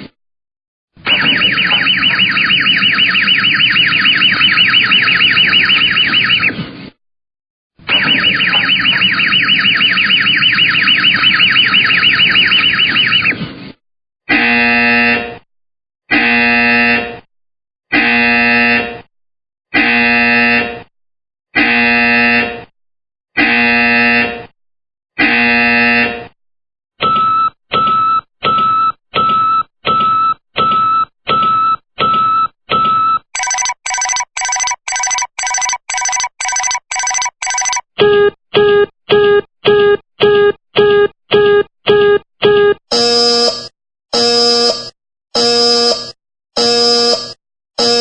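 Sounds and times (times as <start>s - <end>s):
harsh buzzer: 16.1s - 17.2s, 17.9s - 18.9s, 19.8s - 20.9s, 21.6s - 22.5s, 23.4s - 24.5s, 25.2s - 26.2s, 33.4s - 37.8s, 42.9s - 48.0s
electronic warning beeps: 33.4s - 37.8s.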